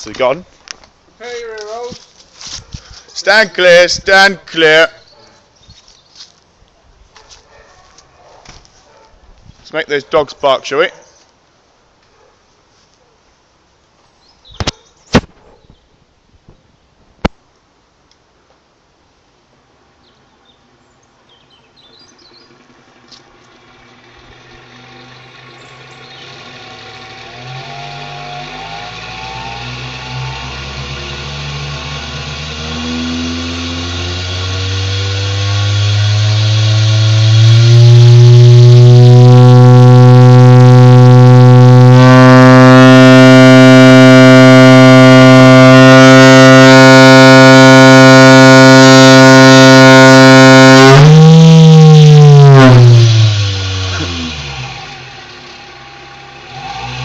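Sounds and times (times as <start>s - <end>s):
fog horn long low blast: 27.1s - 57.0s.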